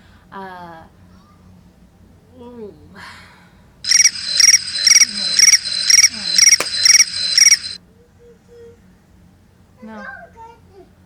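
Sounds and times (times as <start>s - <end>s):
crickets chirping: 3.9s - 7.8s.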